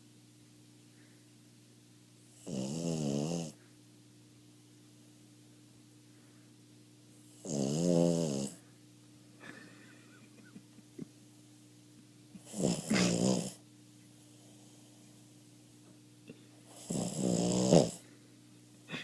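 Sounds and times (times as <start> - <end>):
dog snoring: 2.3 - 3.6, 7.3 - 8.6, 12.4 - 13.6, 16.7 - 18.0.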